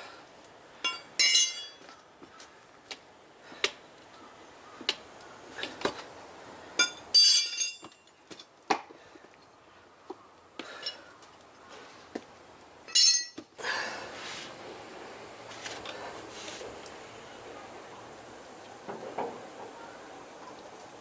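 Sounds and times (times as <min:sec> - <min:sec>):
metal hand tools clinking: 0:00.8 - 0:01.9, 0:06.8 - 0:08.5, 0:12.9 - 0:13.5.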